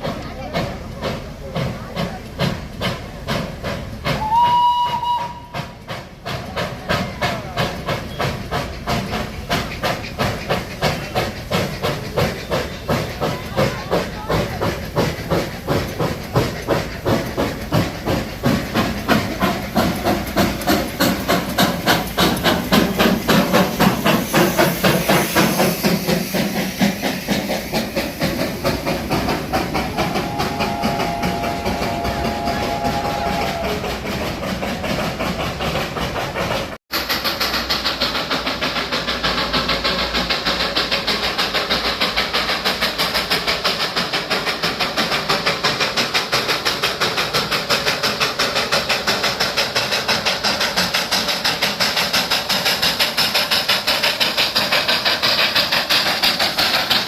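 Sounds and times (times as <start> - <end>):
hissing steam: 0.0 - 57.0
steam exhaust chuffs: 0.0 - 57.0
steam locomotive whistle: 4.1 - 5.9, 29.8 - 34.4.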